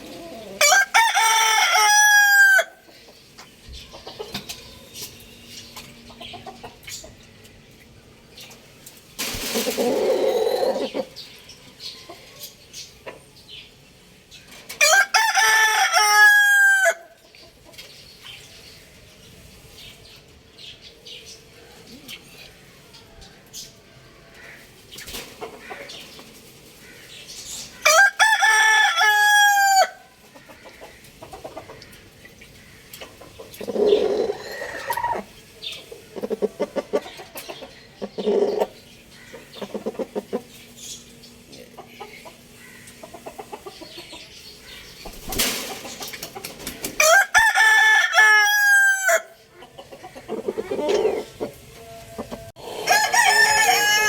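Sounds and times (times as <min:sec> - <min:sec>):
rooster crowing: 0:00.2 - 0:02.8, 0:14.8 - 0:17.1, 0:27.8 - 0:30.0, 0:34.3 - 0:35.2, 0:47.0 - 0:49.4, 0:52.2 - 0:54.0
rapid clucking calls: 0:02.9 - 0:07.9, 0:09.2 - 0:11.2, 0:24.4 - 0:27.8, 0:30.2 - 0:47.0, 0:49.4 - 0:52.5.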